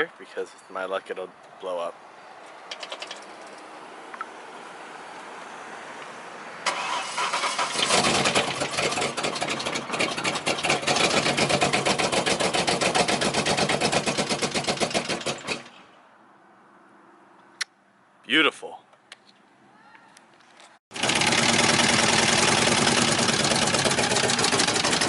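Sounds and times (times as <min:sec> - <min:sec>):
car starter cranking: 0:06.7 - 0:15.8
engine running roughly: 0:07.7 - 0:15.7, 0:20.9 - 0:25.0.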